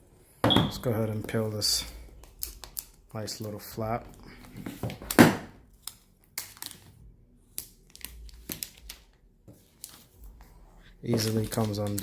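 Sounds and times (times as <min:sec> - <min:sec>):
plastic wrapping crinkling and tearing: 0:05.7 - 0:10.5, 0:11.1 - 0:12.0.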